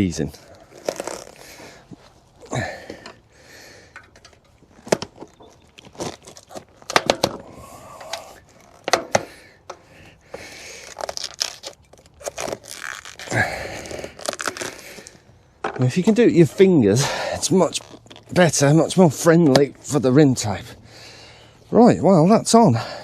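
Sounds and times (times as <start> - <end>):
sharp clicks of tyre bead: 3.8 - 5.3.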